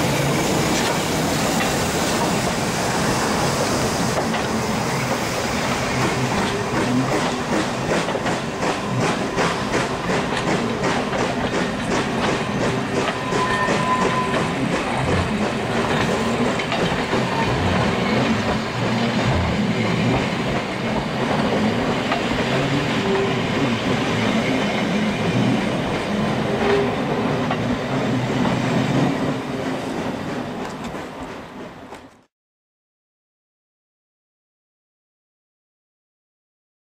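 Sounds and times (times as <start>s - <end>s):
steam train running by: 0.0s - 32.3s
wheels clattering over rail joints: 14.3s - 27.8s.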